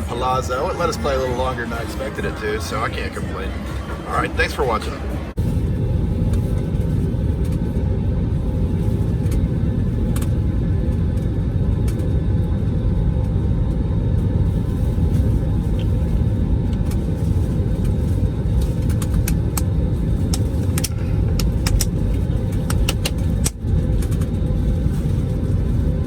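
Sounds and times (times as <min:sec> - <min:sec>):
slot machine electronic tones: 0:00.0 - 0:05.3
steady low rumble: 0:00.0 - 0:26.0.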